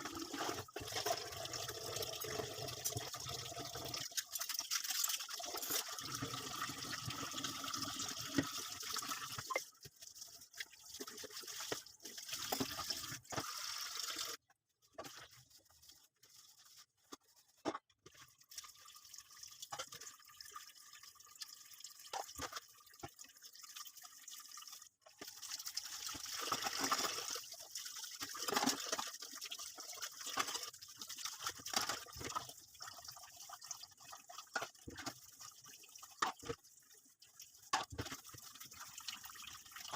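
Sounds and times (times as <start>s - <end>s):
tap water splashing in sink: 21.4s - 23.6s.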